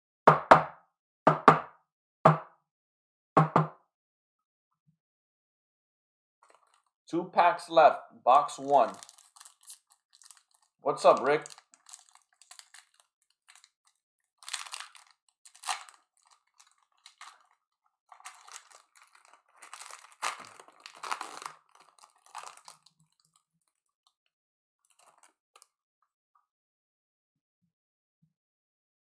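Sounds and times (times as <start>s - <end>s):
card pack wrapper tearing: 8.6s - 17.5s, 18.1s - 23.4s, 24.9s - 25.3s.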